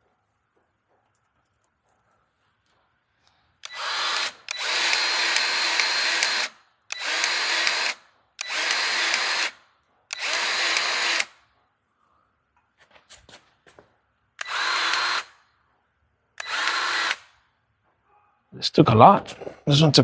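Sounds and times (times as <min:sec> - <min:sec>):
grease gun motor running: 0:03.6 - 0:11.4, 0:14.4 - 0:15.3.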